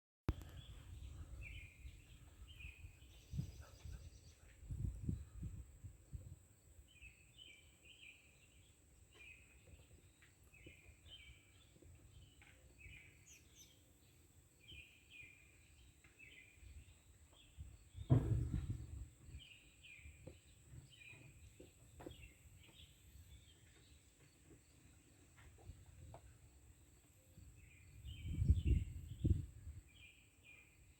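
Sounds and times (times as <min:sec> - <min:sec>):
birds chirping: 0:00.3 - 0:05.7, 0:06.7 - 0:30.9
dull thump: 0:18.0 - 0:19.1.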